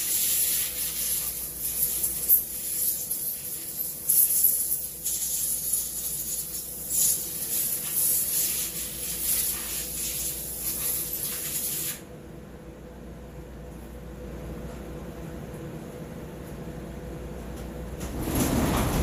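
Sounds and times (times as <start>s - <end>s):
pressurized spray hissing: 0.0s - 12.0s.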